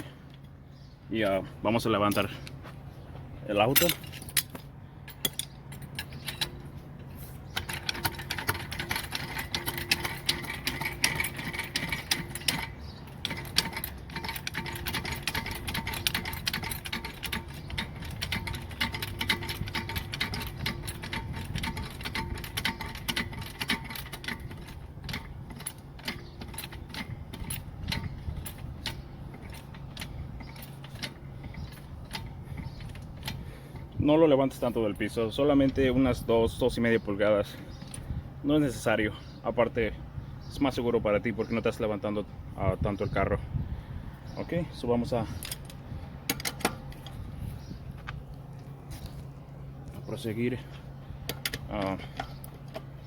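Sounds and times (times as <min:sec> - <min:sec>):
car jack ratcheting: 0:03.6 - 0:36.2, 0:45.0 - 0:47.2, 0:50.4 - 0:53.0.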